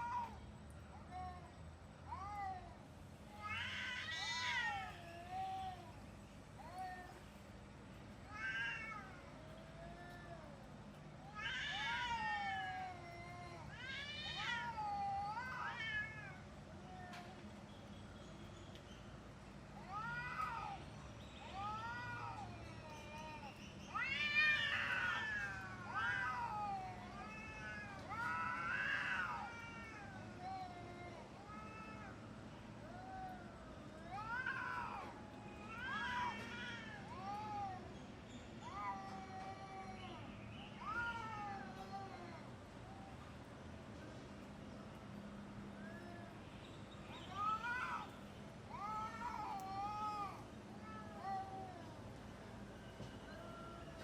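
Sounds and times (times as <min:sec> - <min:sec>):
cats yowling in a fight: 0:03.3 - 0:06.0, 0:08.3 - 0:10.6, 0:11.3 - 0:17.4, 0:19.8 - 0:20.8, 0:21.4 - 0:32.2, 0:32.8 - 0:37.9, 0:38.6 - 0:43.1, 0:48.7 - 0:51.9.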